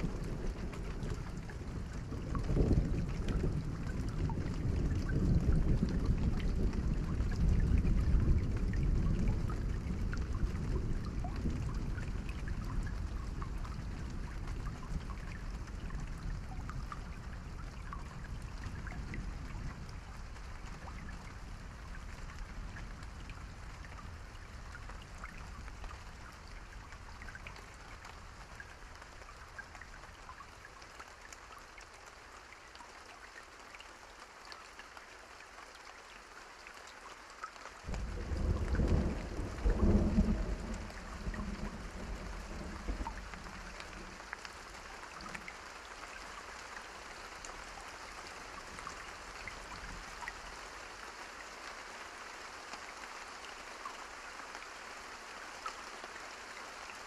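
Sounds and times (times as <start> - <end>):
steady rain falling: 0.0 - 57.0
loud thunder clap: 37.9 - 43.6
thunder rumbling: 37.9 - 44.3.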